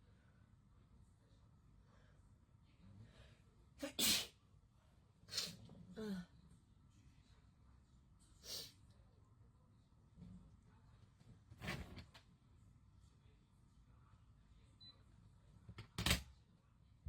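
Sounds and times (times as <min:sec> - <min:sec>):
woman sneezing: 0:03.8 - 0:04.3.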